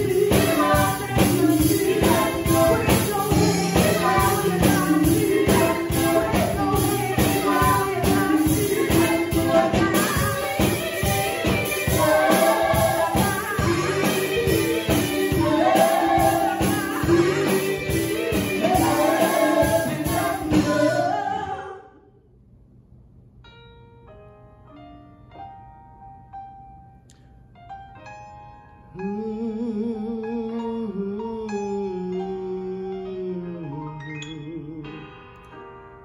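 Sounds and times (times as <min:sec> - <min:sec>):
gospel singing over a beat: 0:00.0 - 0:22.0.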